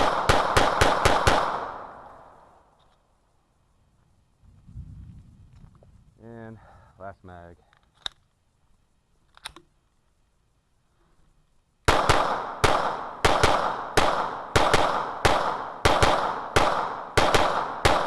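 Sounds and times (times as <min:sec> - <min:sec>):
pistol shots: 0:00.0 - 0:02.3, 0:11.9 - 0:18.0
pistol click: 0:07.7 - 0:08.3, 0:09.3 - 0:09.7.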